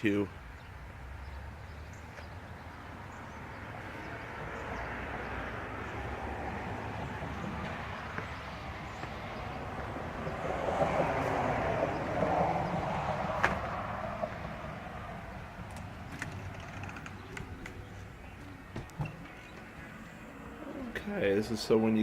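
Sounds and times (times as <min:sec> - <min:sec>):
road traffic hiss: 0:00.0 - 0:15.7.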